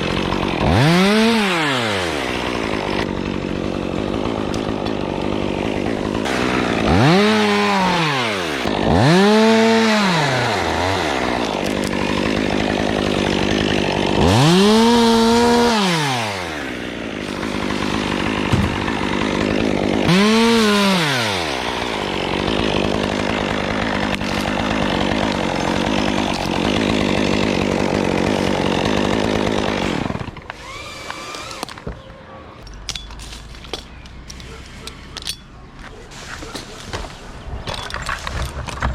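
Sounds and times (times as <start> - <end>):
chainsaw revving: 0.0 - 31.9.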